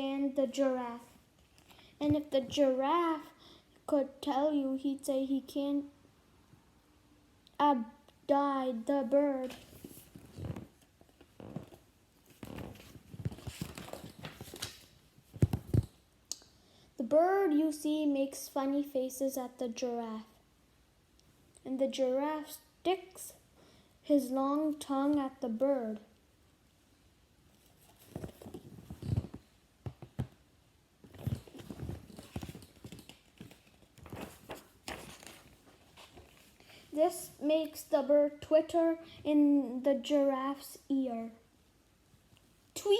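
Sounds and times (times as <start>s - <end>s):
paper rustling: 9.4s - 16.0s, 27.6s - 30.4s, 31.0s - 36.7s
soft irregular thumps and taps: 15.2s - 16.0s, 28.1s - 30.4s.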